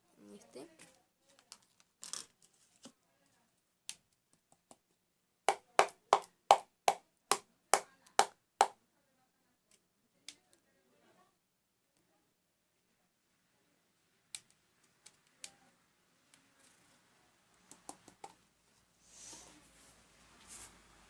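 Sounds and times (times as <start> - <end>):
faint clicks and scrapes: 0.7 - 4.6, 14.3 - 20.9.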